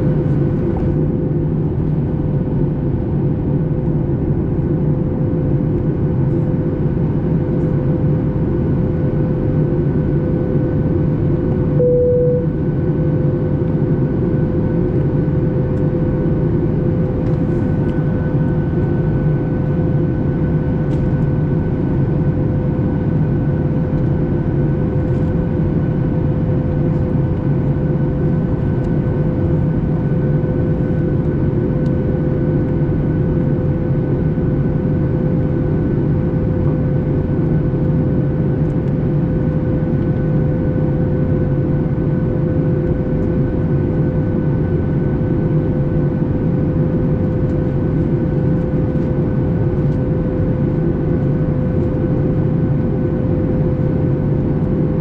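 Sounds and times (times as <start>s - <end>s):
aircraft cabin engine rush: 0.0s - 55.0s
steady hum: 11.7s - 13.0s.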